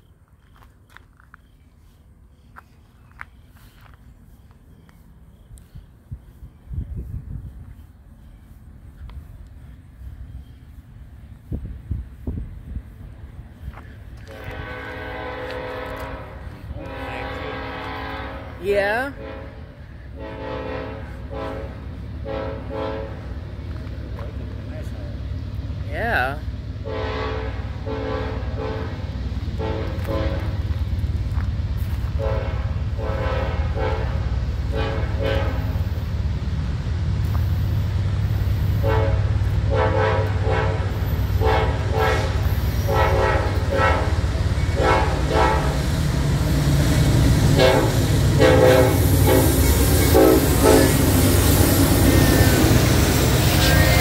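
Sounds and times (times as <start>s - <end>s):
rail and wheel noise: 0.0s - 54.0s
locomotive horn short toots: 14.2s - 23.4s, 26.8s - 29.0s, 29.6s - 30.6s, 32.2s - 35.8s, 38.8s - 45.8s, 47.5s - 51.3s
low diesel rumble: 19.2s - 54.0s.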